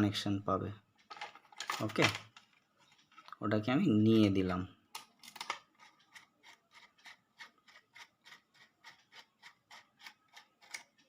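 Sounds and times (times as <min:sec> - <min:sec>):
screwdriver turning screw: 0:05.2 - 0:11.0.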